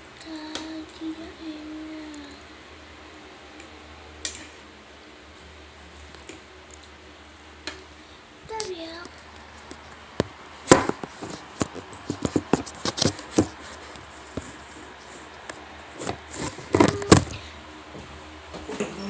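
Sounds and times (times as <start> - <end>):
objects handled by hand: 8.5 - 17.4.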